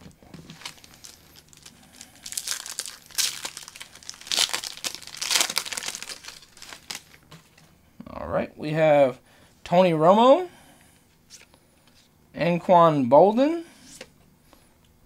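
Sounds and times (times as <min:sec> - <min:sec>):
wrapper tearing and crinkling: 0:00.4 - 0:07.2.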